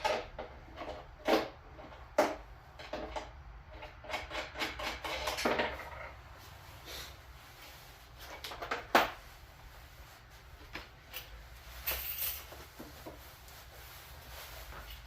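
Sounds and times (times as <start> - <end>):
tools clicking and tapping: 0.0 - 5.8.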